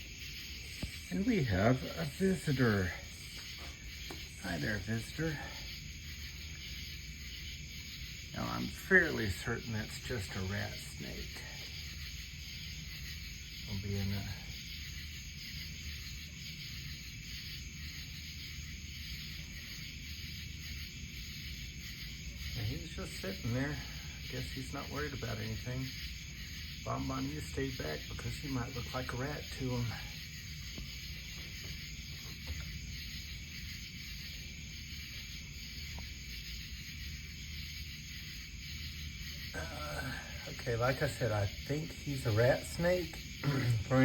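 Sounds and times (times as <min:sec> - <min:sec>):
even high hiss: 0:00.0 - 0:44.0
faint ticks: 0:35.1 - 0:36.2.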